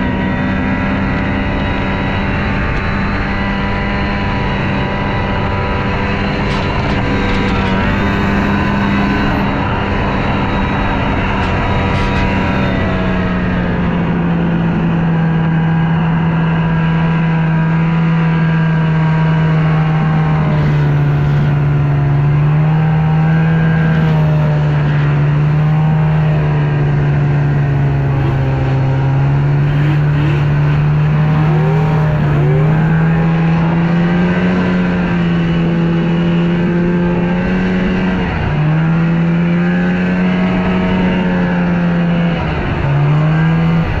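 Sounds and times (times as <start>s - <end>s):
snowmobile engine idling: 1.6s - 17.9s, 18.6s - 34.0s.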